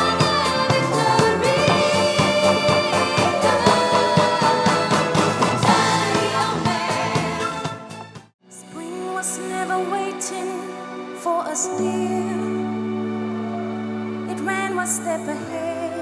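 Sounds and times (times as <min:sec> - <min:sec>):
person singing: 0:00.0 - 0:07.8, 0:08.5 - 0:16.0
orchestra and band playing soul: 0:00.0 - 0:08.4.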